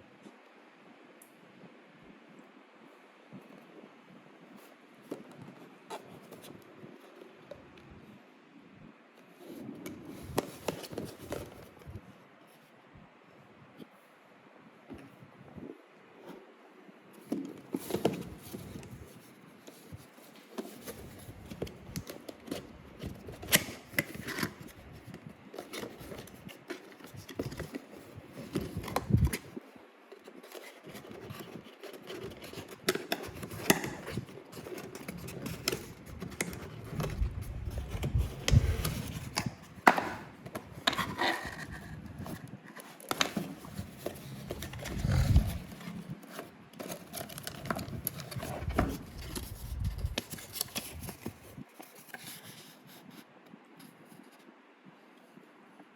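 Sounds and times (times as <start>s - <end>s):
packaging being opened: 30.3s - 51.6s.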